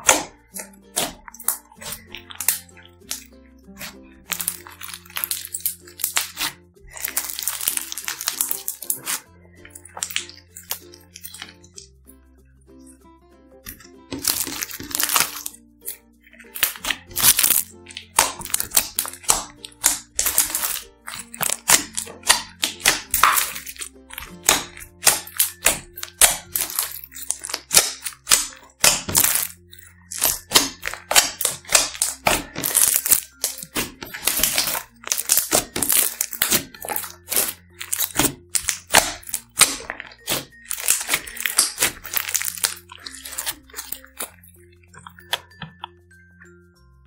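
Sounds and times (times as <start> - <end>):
slime crackling and popping: 0.0 - 9.2, 9.8 - 11.6, 13.7 - 45.8
soft background music: 0.0 - 47.0.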